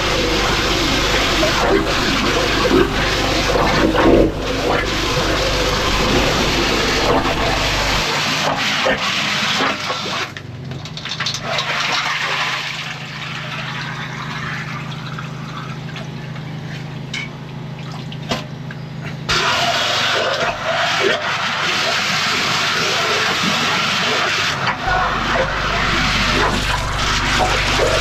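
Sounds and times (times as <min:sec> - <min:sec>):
water rushing and splashing: 0:00.0 - 0:10.1
drain-jetting machine engine drone: 0:00.0 - 0:28.0.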